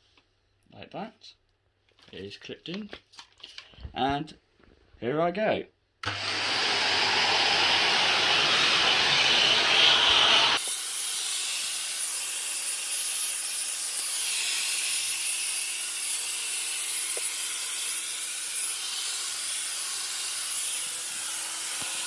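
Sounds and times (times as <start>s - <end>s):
vacuum motor hum: 6.0s - 10.6s
vacuum cleaner nozzle hiss: 6.0s - 12.4s, 16.9s - 22.0s.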